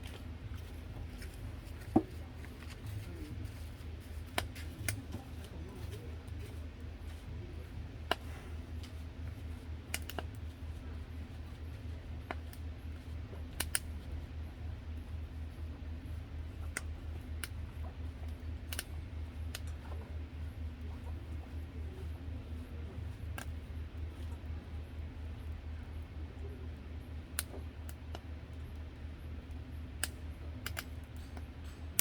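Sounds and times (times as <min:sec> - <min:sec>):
steady low hum: 0:00.0 - 0:32.0.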